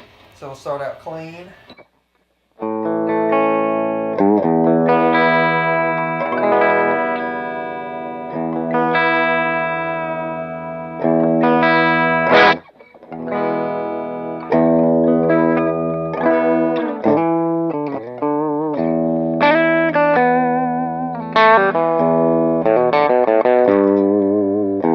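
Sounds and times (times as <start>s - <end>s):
clean electric guitar chords: 2.6s - 24.9s.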